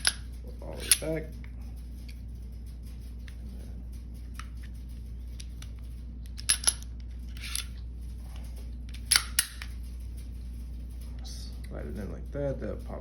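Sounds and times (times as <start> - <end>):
sharp metal clicks: 0.0 - 11.0
gun slide sliding scrape: 7.3 - 7.7.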